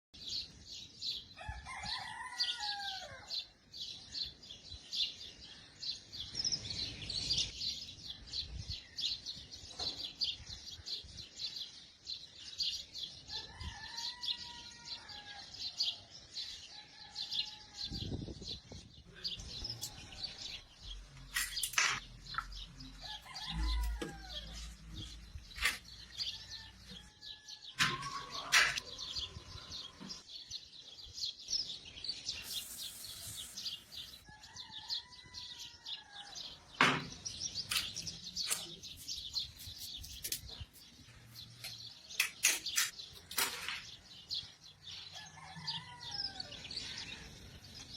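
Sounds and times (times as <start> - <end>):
birds chirping: 15.1 - 47.9.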